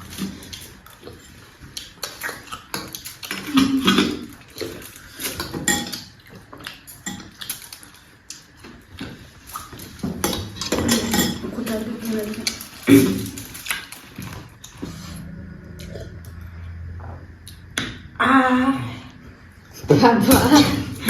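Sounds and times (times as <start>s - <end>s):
dishes and cutlery clinking: 3.2s - 7.7s, 10.0s - 13.7s.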